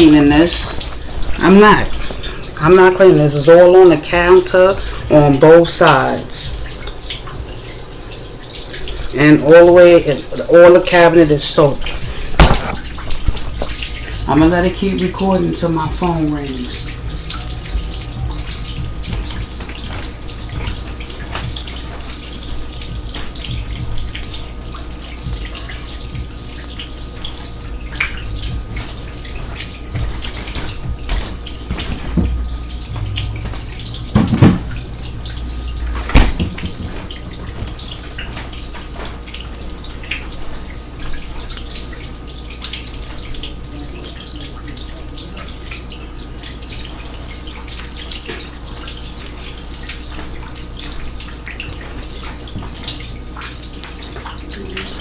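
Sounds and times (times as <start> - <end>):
water running into sink: 0.0 - 55.0
knocks: 12.4 - 13.8, 29.4 - 35.0, 36.0 - 37.8.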